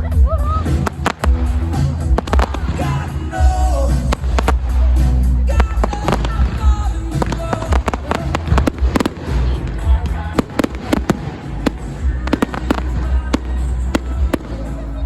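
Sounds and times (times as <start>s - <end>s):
music with heavy bass: 0.0s - 15.0s
fireworks bangs and crackles: 0.1s - 15.0s.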